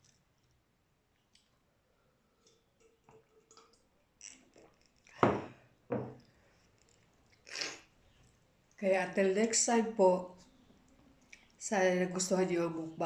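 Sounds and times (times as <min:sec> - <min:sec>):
lip smacks while eating: 0:10.8 - 0:11.6.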